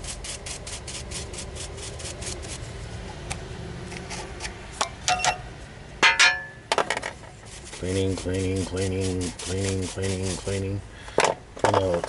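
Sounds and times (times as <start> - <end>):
quick brushing strokes: 0.0 - 2.9, 7.2 - 10.8.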